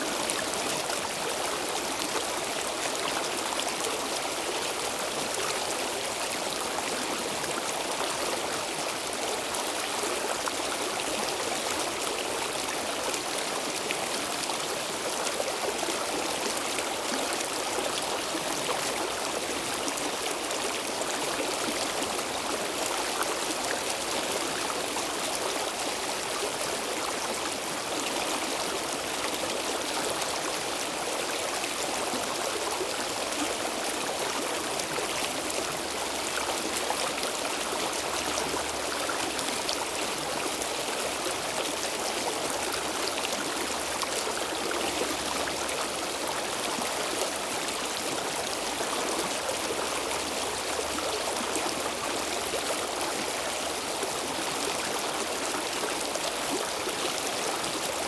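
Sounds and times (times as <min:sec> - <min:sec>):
stream flowing over stones: 0:00.0 - 0:58.0.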